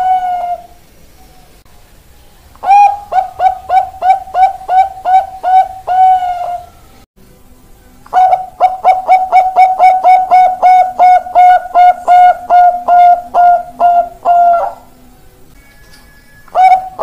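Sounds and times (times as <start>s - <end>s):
dove cooing: 0.0s - 0.8s, 2.6s - 6.8s, 8.1s - 15.0s, 16.5s - 17.0s.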